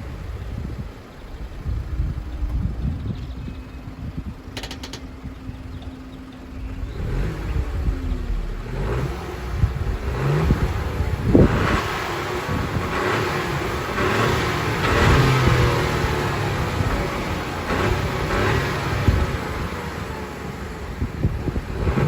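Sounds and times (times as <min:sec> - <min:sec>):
car engine idling and revving: 0:00.0 - 0:22.0
clatter of clicks: 0:04.5 - 0:05.2.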